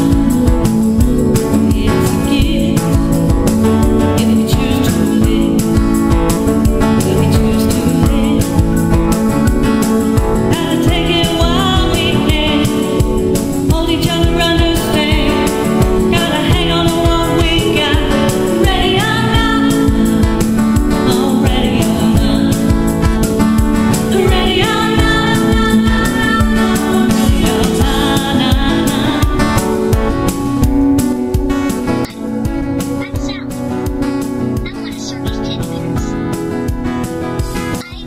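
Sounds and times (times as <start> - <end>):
instrumental backing with beat: 0.0 - 38.0
person singing: 1.5 - 3.1, 3.9 - 5.9, 6.8 - 8.9, 10.4 - 22.9, 24.0 - 29.9.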